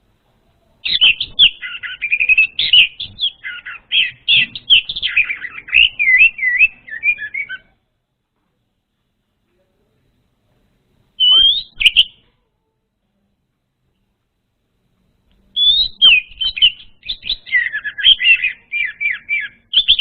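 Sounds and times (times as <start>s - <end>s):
thrush singing whistled trills: 0.8s - 7.8s, 11.2s - 12.2s, 15.5s - 20.0s.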